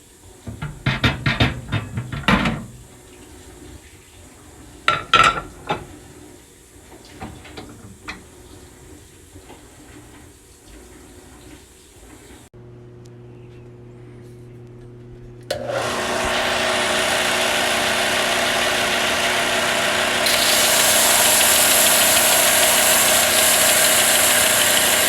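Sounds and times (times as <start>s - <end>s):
clattering and knocking of turntable parts: 0.5s - 2.8s
microwave humming: 0.5s - 3.0s, 15.4s - 25.0s.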